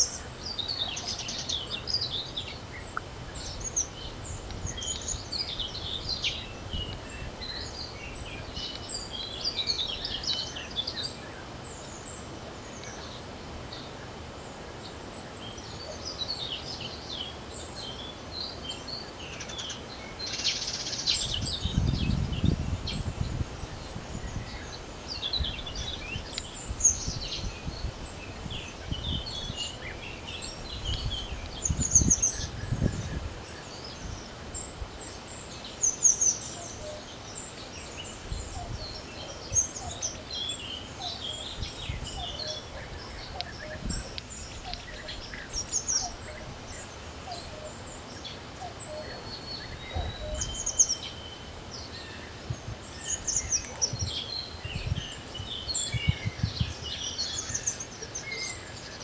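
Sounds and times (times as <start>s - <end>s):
wind rumbling on microphone: 0.0s - 11.1s, 20.7s - 35.4s, 36.5s - 47.4s, 49.5s - 57.9s
songbirds chirping and trilling: 0.0s - 59.0s.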